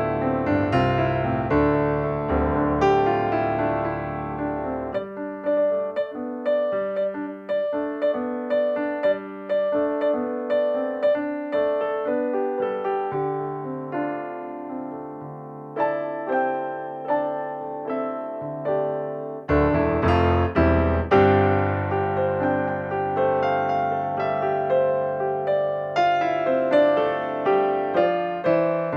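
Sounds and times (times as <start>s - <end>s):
gentle piano music: 0.0s - 28.9s.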